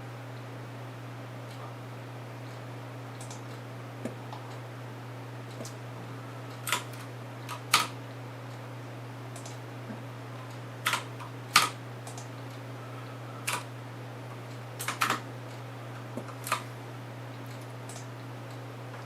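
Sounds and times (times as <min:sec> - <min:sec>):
steady low hum: 0:00.0 - 0:19.0
computer keystrokes: 0:03.2 - 0:03.4.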